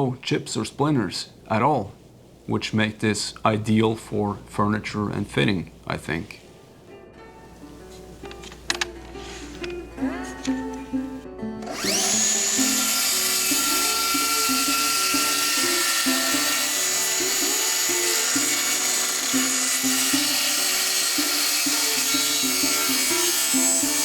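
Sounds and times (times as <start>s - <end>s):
circular saw cutting wood: 11.6s - 24.0s.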